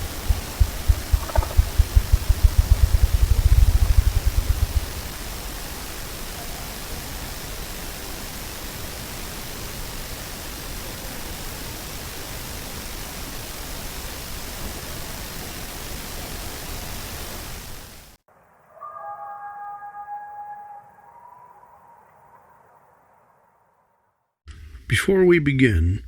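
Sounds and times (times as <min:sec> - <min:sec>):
grouse wing-drumming thumps: 0:00.0 - 0:06.0
steady hiss: 0:00.0 - 0:18.7.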